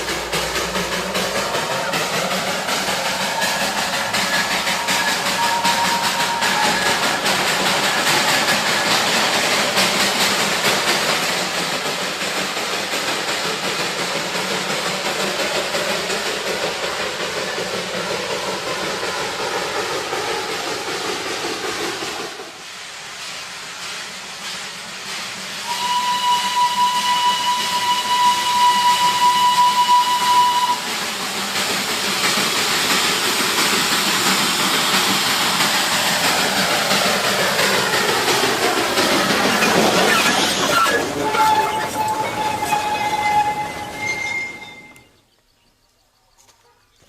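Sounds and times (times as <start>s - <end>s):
train whistle: 3.3s - 7.1s, 25.6s - 30.9s, 40.8s - 45.1s.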